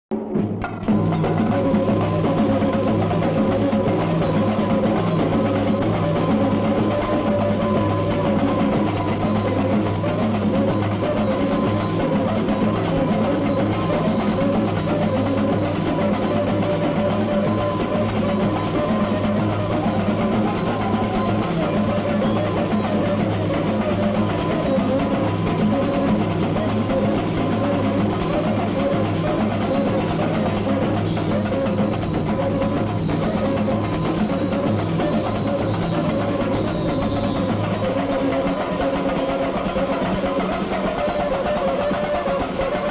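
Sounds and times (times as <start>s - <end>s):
samba music with drums: 0.1s - 42.9s.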